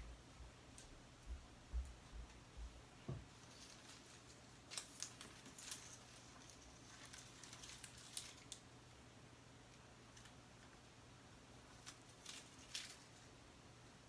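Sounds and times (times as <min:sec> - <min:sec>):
sharp clicks and light scratching: 0:03.3 - 0:08.7, 0:11.7 - 0:13.3.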